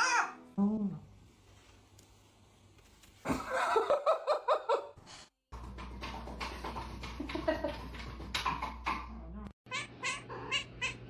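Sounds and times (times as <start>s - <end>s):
person laughing: 3.3s - 4.9s.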